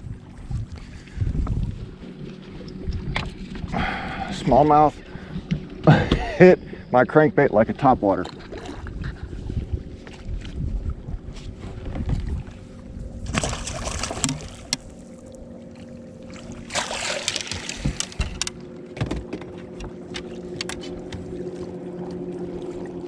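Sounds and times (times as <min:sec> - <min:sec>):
low hum and rumble: 0:00.0 - 0:23.0
fish splashing at the surface: 0:13.2 - 0:14.9, 0:16.3 - 0:18.2.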